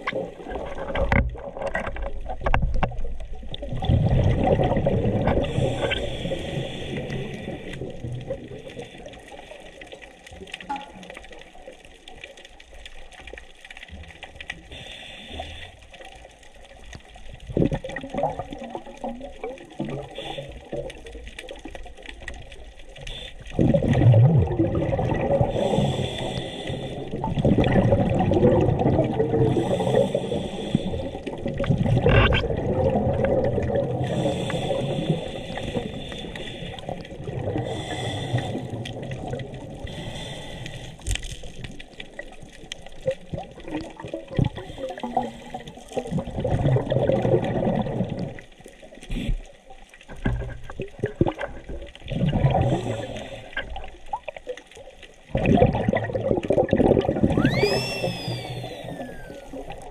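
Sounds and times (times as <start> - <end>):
bubbles rumbling and gurgling: 0.0 - 59.9
regulator hissing on inhale: 5.4 - 8.0, 14.7 - 15.9, 20.2 - 20.7, 25.5 - 27.2, 29.5 - 31.4, 34.0 - 37.0, 37.6 - 38.9, 39.8 - 41.2, 52.7 - 53.7, 57.6 - 59.8.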